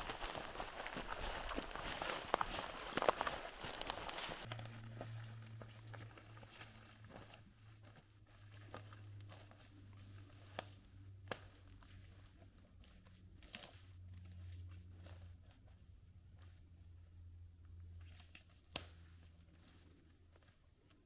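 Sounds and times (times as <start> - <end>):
twigs cracking: 0.0 - 5.0
footsteps on dry leaves: 0.0 - 10.6
low steady hum: 0.0 - 21.0.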